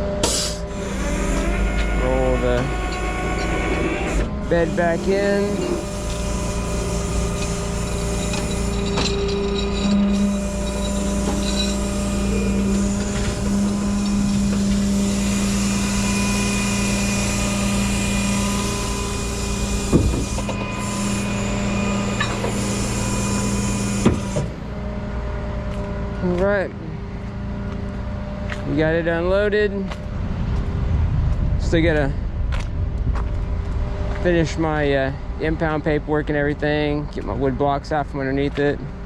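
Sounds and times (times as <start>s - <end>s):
truck engine with hydraulic hum: 0.0s - 31.0s.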